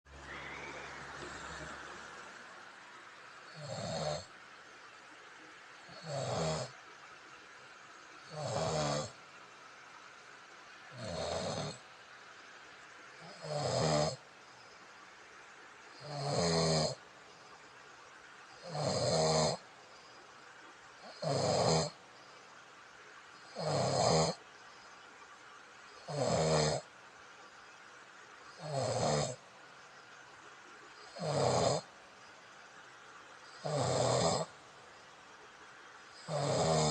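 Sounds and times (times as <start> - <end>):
person snoring: 0.6 - 2.1, 3.4 - 4.3, 5.8 - 6.8, 8.2 - 9.2, 10.9 - 11.8, 13.2 - 14.2, 16.0 - 17.0, 18.6 - 19.6, 21.0 - 22.0, 23.4 - 24.4, 26.0 - 26.9, 28.5 - 29.4, 31.0 - 31.9, 33.5 - 34.5, 36.2 - 36.9.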